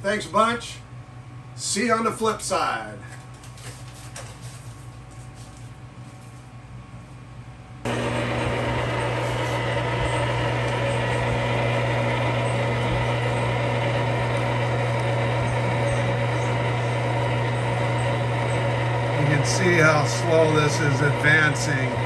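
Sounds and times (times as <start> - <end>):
metal lathe humming: 7.9 - 22.0.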